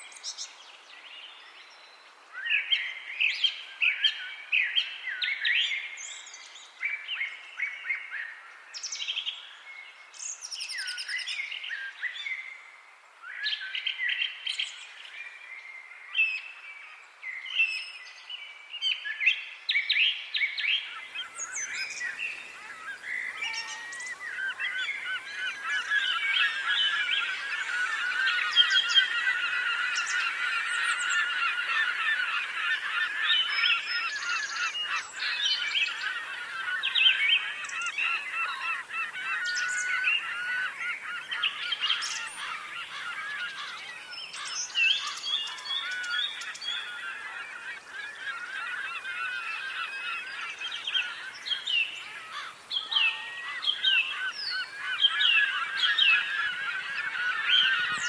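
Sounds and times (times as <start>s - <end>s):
chorus of birds calling: 13.3s - 58.0s.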